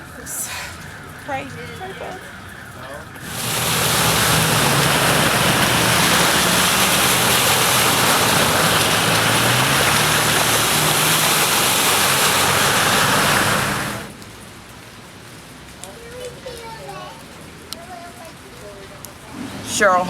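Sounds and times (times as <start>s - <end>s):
heavy rain pouring: 0.0s - 20.0s.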